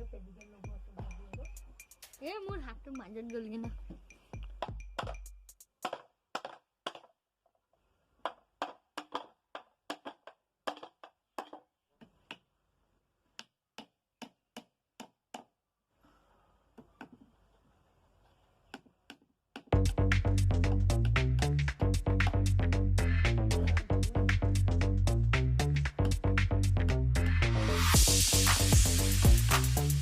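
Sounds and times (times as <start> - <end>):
sharp taps and knocks: 5.8 - 7.1.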